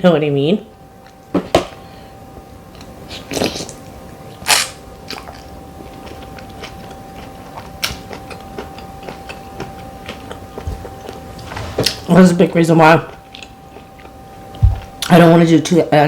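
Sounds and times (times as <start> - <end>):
chewing with wet clicks: 5.1 - 12.0, 13.1 - 15.2.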